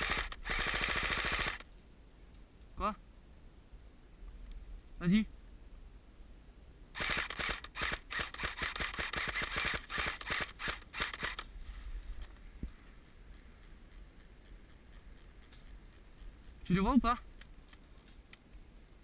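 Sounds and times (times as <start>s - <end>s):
airsoft gun firing rapidly: 0.0s - 1.6s, 7.0s - 11.4s.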